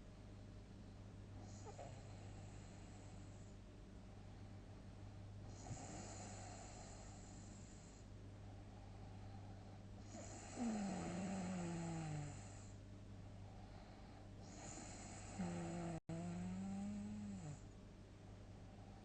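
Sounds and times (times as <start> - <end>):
heavy snoring: 1.5 - 3.0, 5.5 - 8.0, 10.0 - 12.8, 14.4 - 17.6.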